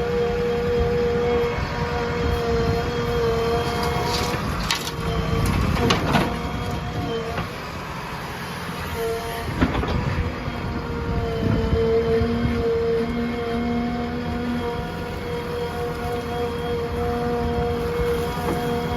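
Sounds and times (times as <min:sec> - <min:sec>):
heavy diesel machinery running: 0:00.0 - 0:18.9
machinery whine: 0:00.0 - 0:18.9.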